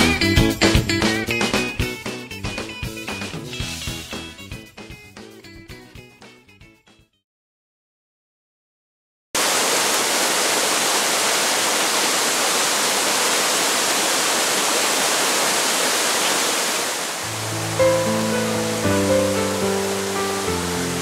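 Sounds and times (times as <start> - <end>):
music: 0.0 - 7.2, 17.2 - 21.0
waterfall rushing: 9.4 - 21.0.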